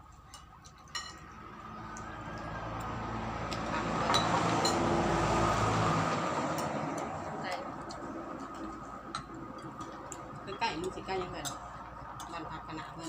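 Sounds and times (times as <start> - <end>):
vehicle passing on road: 1.1 - 13.0.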